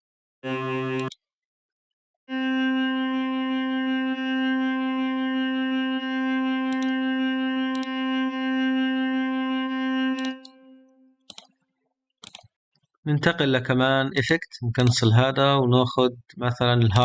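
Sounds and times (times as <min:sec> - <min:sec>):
held electronic synth note: 0:00.4 - 0:01.1, 0:02.3 - 0:11.1
mouse clicks: 0:07.7 - 0:07.9, 0:11.3 - 0:11.6, 0:12.2 - 0:12.5.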